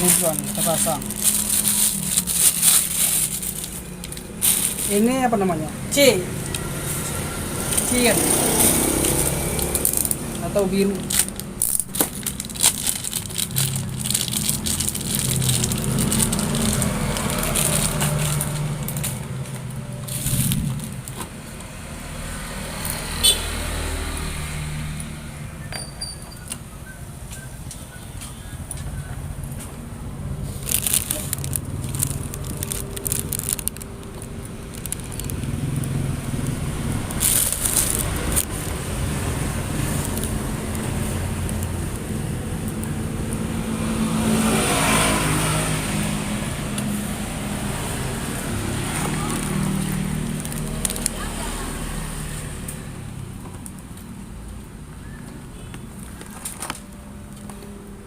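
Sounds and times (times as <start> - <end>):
plastic crackling and clicking: 11.0 - 21.7, 30.6 - 38.8, 39.7 - 43.4, 48.9 - 51.2, 55.7 - 57.8
low rumble: 18.3 - 21.2.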